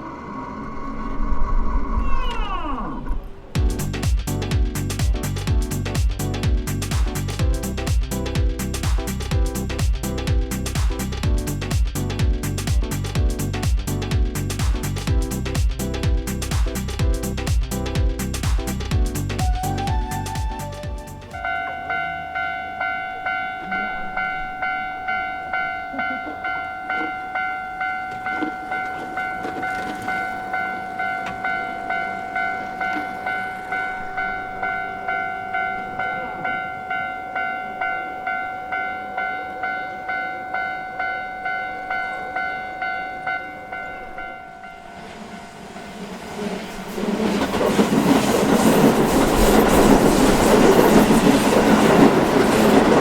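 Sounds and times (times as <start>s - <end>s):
level-crossing warning bell ringing: 21.3s - 46.0s
train wheels on rails clattering: 25.9s - 34.8s, 44.3s - 53.0s.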